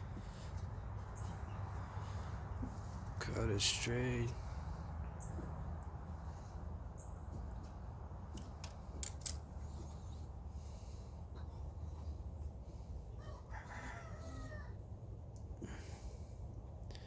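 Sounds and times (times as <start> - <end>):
low background hum: 0.0 - 17.0
rooster crowing faintly: 13.2 - 14.9.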